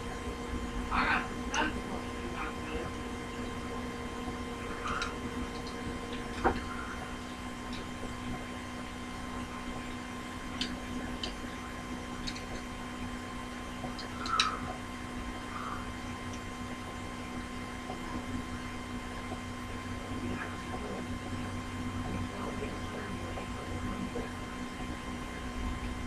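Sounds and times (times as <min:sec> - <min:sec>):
steady hum: 0:00.0 - 0:26.0
light clicks of small parts: 0:12.2 - 0:12.7, 0:13.8 - 0:14.7.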